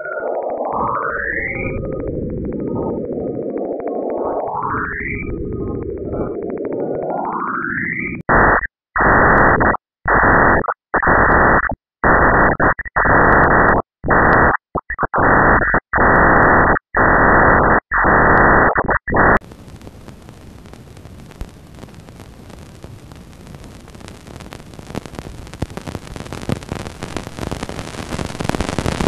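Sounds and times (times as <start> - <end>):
harsh static blasts: 8.3 - 29.0
steady hiss: 19.5 - 29.0.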